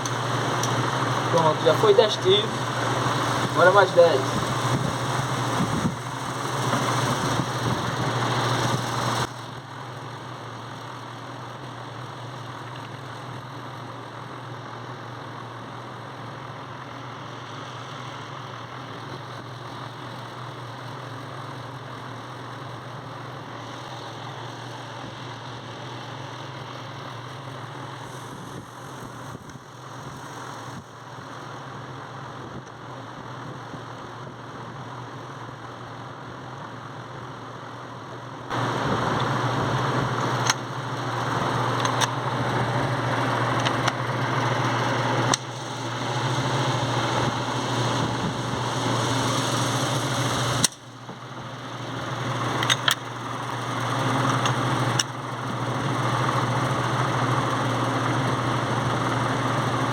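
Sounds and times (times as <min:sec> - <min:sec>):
steady low hum: 0:00.0 - 0:19.8.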